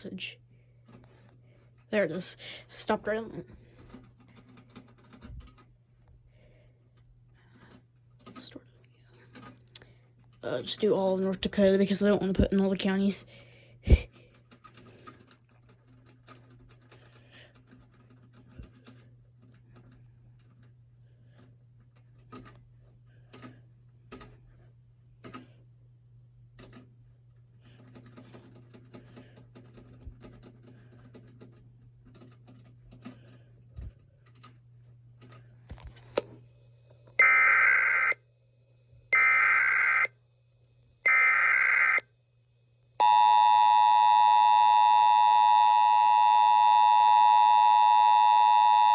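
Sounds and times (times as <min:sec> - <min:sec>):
two-tone attention signal: 0:43.0 - 0:48.9.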